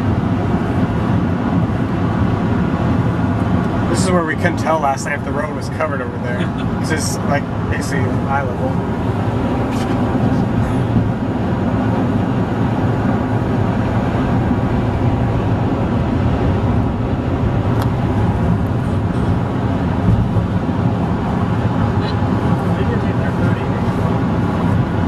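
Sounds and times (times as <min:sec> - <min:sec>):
car road and engine noise: 0:00.0 - 0:25.0.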